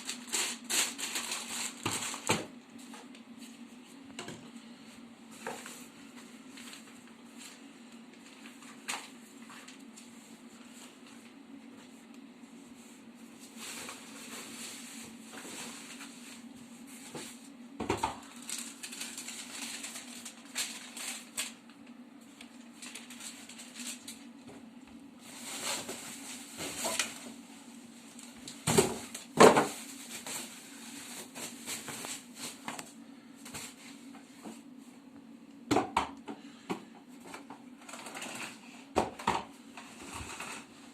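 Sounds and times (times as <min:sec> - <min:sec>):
plastic packaging rustling: 0:00.0 - 0:03.1, 0:13.4 - 0:24.3, 0:25.2 - 0:27.4, 0:28.0 - 0:32.9
faint steady hum: 0:00.0 - 0:40.9.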